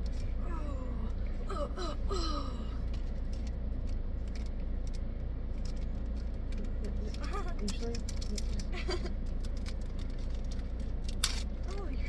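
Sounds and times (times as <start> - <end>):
steady low hum: 0.0 - 12.0
person making drawn-out sounds: 0.4 - 2.8.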